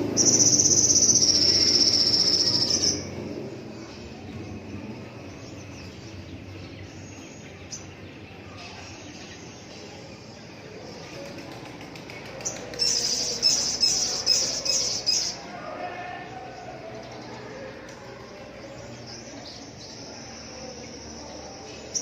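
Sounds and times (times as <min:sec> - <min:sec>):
small bird chirping: 0:00.0 - 0:04.3, 0:12.4 - 0:15.4.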